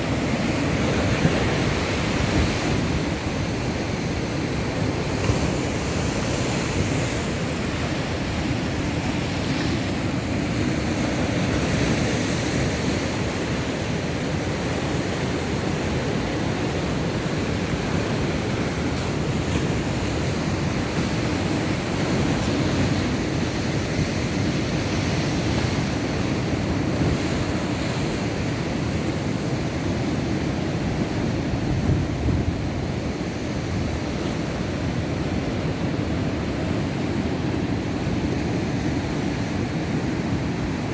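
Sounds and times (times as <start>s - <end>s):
wind buffeting microphone: 0.0s - 13.5s, 30.5s - 36.5s
heavy surf breaking: 0.0s - 40.9s.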